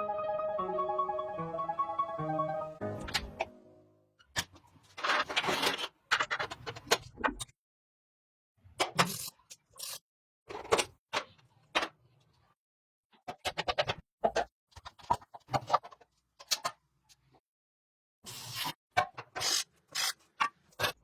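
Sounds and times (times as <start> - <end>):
tools and parts knocking and scraping: 13.2 - 16.8.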